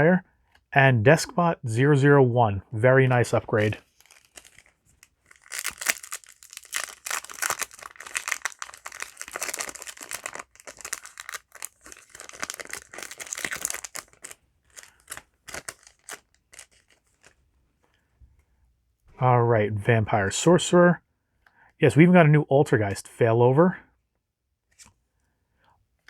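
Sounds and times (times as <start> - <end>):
cards clicking and rustling: 3.5 - 17.4
wrapper tearing and crinkling: 3.6 - 17.4.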